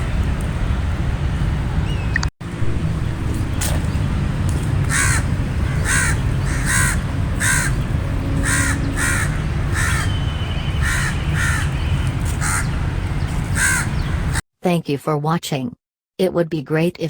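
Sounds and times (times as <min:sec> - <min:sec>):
steady low rumble: 0:00.0 - 0:09.8
crow cawing: 0:04.9 - 0:07.8, 0:08.4 - 0:10.2, 0:10.8 - 0:11.8, 0:12.4 - 0:12.7, 0:13.6 - 0:14.0.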